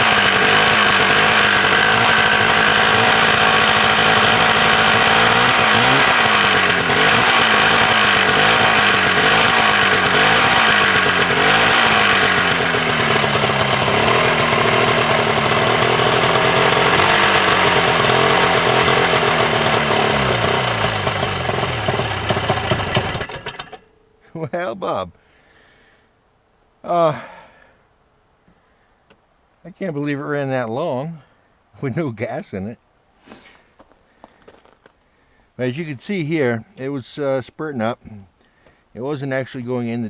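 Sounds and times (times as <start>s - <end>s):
snowmobile engine revving: 0.0s - 23.8s.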